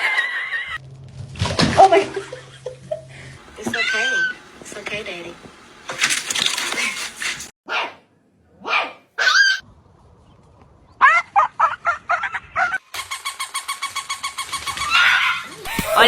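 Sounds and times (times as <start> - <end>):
fast even pulsing: 0.9 - 7.5
dog barking and yipping: 8.6 - 9.6.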